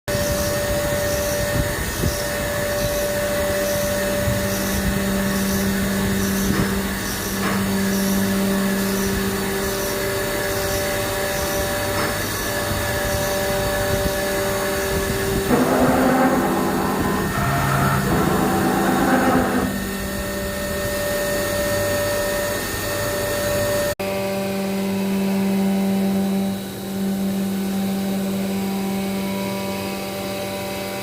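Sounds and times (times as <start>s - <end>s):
milling machine hum: 0.1s - 31.0s.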